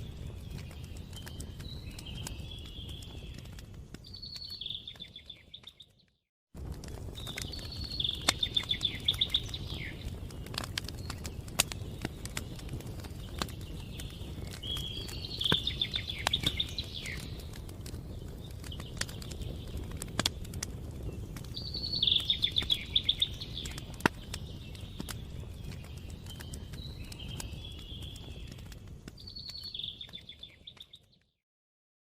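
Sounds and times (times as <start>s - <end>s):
campfire crackling and popping: 0.0s - 6.0s, 6.6s - 31.2s
songbird trilling: 7.7s - 10.0s, 14.6s - 17.3s, 21.6s - 23.9s.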